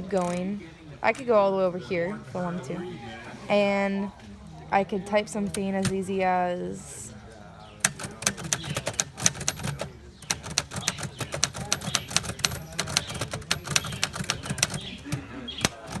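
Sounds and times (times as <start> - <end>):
typewriter key strikes: 7.9 - 16.0.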